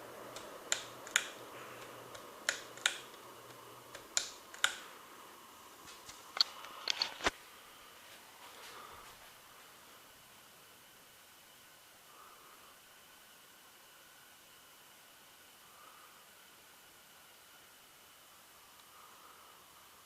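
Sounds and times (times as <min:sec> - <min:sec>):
ceiling fan coasting down: 0:00.0 - 0:20.0
faint motor hum: 0:00.0 - 0:20.0
sharp clicks: 0:00.3 - 0:04.9.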